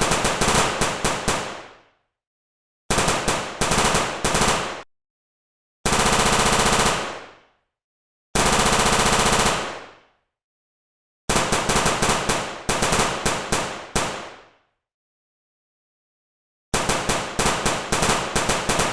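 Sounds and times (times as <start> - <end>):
automatic gunfire bursts: 0.0 - 1.6, 2.9 - 4.9, 5.9 - 7.2, 8.4 - 9.8, 11.3 - 14.3, 16.8 - 18.9.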